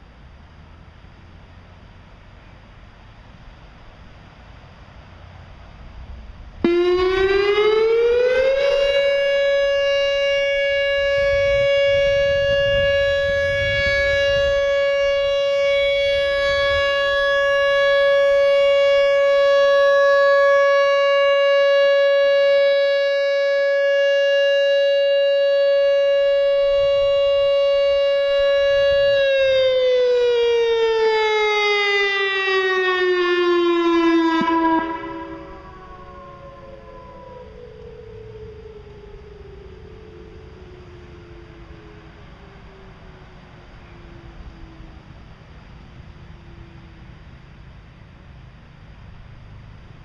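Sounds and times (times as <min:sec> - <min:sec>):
outdoor warning siren: 0:00.0 - 0:50.0.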